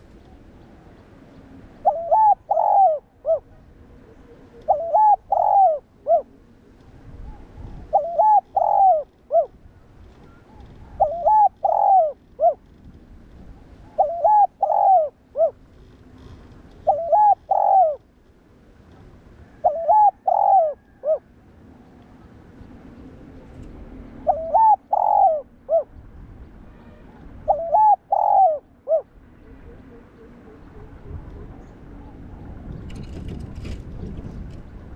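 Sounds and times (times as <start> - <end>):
dove cooing: 1.8 - 6.4, 7.2 - 9.6, 10.3 - 12.6, 13.8 - 15.6, 16.8 - 18.0, 19.4 - 21.3, 24.2 - 25.9, 27.5 - 32.5.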